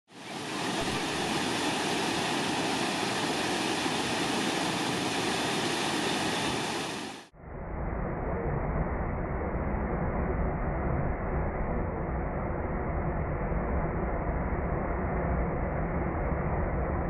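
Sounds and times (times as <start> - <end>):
waterfall roar: 0.1 - 7.3.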